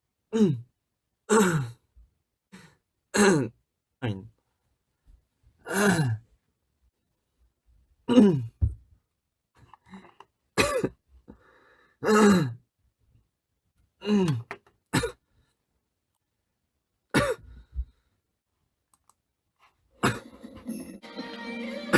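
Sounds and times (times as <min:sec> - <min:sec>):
man coughing: 0:10.6 - 0:11.0, 0:14.2 - 0:15.2, 0:17.1 - 0:17.6, 0:20.0 - 0:20.4.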